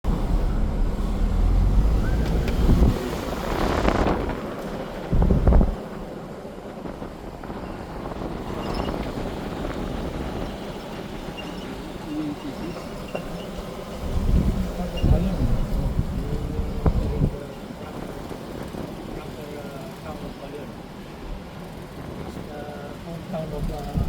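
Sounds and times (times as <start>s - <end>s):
car road and engine rumble: 0.0s - 24.0s
wind on microphone: 0.1s - 19.5s
low thump: 5.1s - 5.8s.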